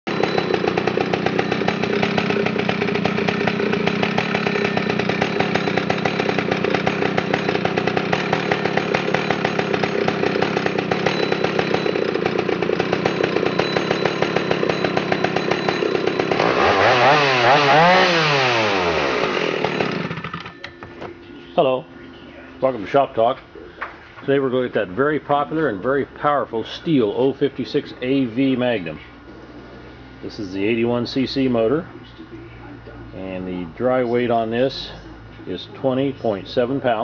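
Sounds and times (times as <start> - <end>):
chainsaw running and revving: 0.1 - 20.6.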